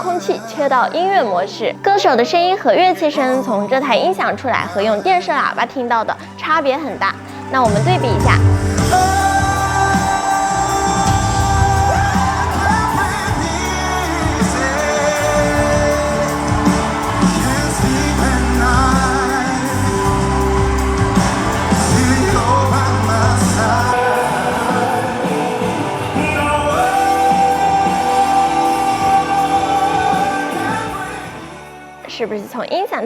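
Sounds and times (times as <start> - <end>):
singer with wavering voice: 0.0 - 33.0
band with steady bass line: 7.2 - 31.7.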